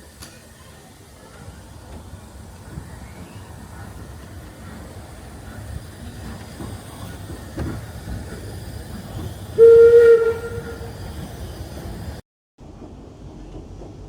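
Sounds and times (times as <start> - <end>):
moving train rumble: 0.0 - 14.0
steam locomotive whistle blast: 9.6 - 11.0.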